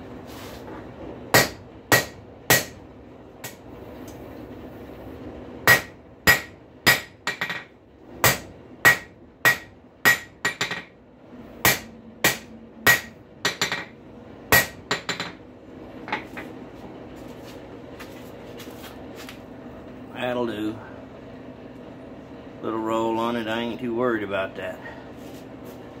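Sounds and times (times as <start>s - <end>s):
hammer striking metal on anvil: 1.4s - 2.8s, 5.7s - 10.9s, 11.6s - 13.9s, 14.5s - 15.4s.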